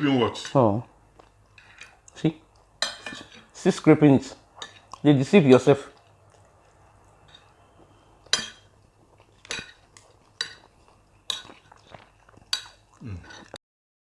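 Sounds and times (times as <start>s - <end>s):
cutlery scraping a plate: 2.8s - 3.5s, 8.3s - 8.7s, 9.4s - 9.8s.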